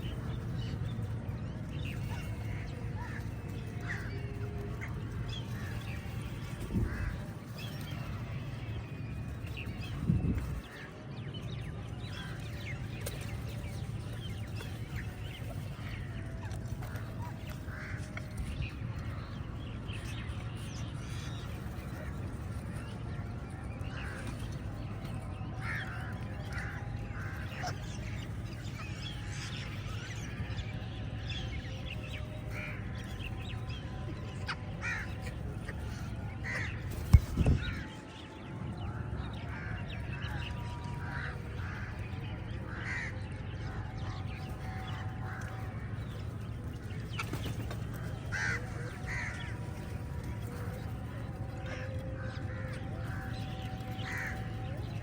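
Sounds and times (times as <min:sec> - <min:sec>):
crows cawing: 0:06.8 - 0:07.3, 0:16.9 - 0:18.3, 0:25.6 - 0:28.1, 0:34.6 - 0:36.8, 0:41.0 - 0:45.9, 0:47.9 - 0:50.8, 0:51.6 - 0:54.8.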